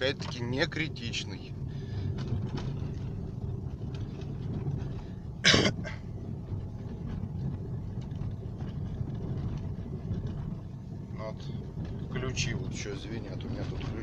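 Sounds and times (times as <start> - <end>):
car cabin rumble on rough road: 0.0 - 14.0
loud cough-like burst: 5.4 - 6.0.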